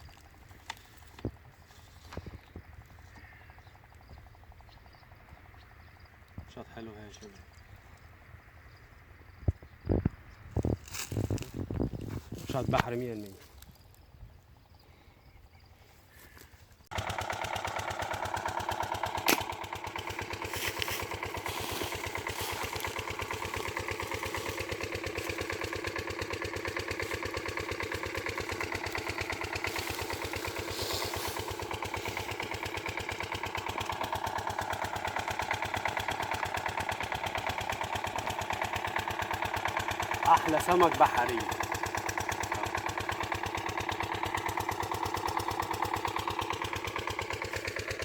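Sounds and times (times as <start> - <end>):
small engine running: 0.0 - 48.0
sharp click: 19.2 - 19.5.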